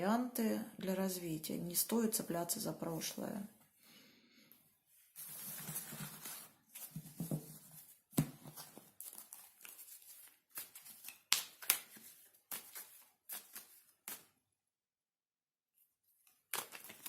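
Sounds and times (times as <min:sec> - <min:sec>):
cards being shuffled: 0:05.3 - 0:14.3, 0:16.3 - 0:17.0.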